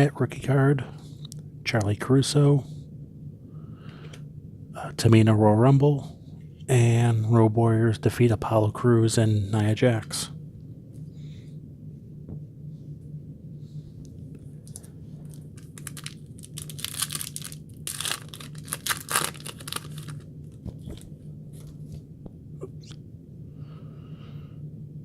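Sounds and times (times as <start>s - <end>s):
low hum: 0.0s - 25.0s
foil wrapper tearing and crinkling: 15.2s - 21.0s.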